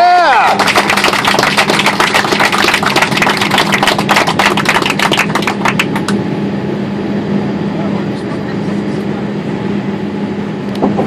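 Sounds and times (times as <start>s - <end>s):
crowd applauding and cheering: 0.0s - 6.1s.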